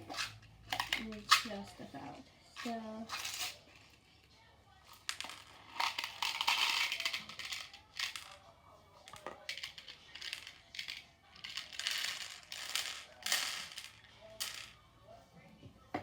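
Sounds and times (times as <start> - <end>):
plastic beads clicking and rattling: 0.2 - 1.5, 4.9 - 8.4, 9.1 - 14.8.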